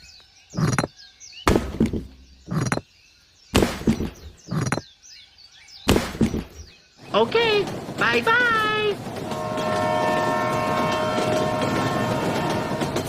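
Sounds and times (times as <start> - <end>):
faint bird chirps: 0.0 - 7.2
heavy chopping knocks: 1.5 - 2.1, 3.6 - 4.2, 5.9 - 6.6.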